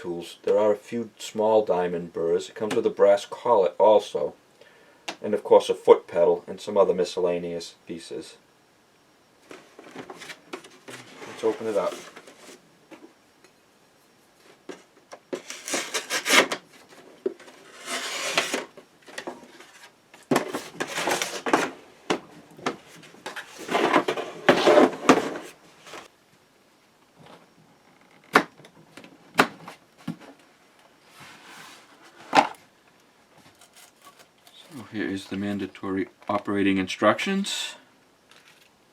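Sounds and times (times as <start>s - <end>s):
rustling and rubbing of contents: 9.4s - 12.7s, 14.1s - 26.1s, 31.0s - 32.7s.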